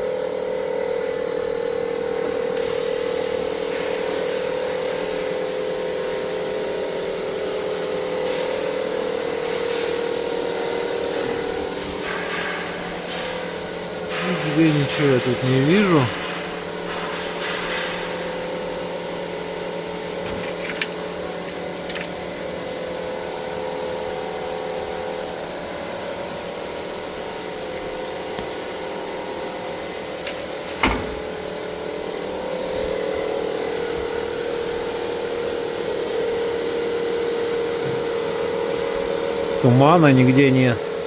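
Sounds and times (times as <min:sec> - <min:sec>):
air pump humming: 0:01.4 - 0:41.0
sharp knock: 0:30.8 - 0:31.3.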